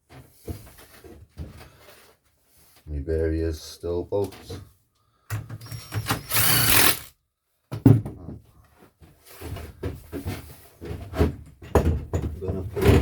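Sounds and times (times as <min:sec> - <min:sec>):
knocks and clatter of handling: 0:07.7 - 0:13.0.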